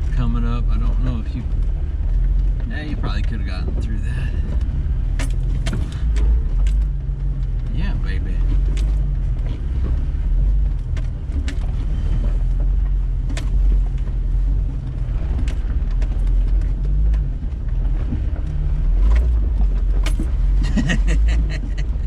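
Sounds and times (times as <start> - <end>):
off-road vehicle engine running: 0.0 - 22.0.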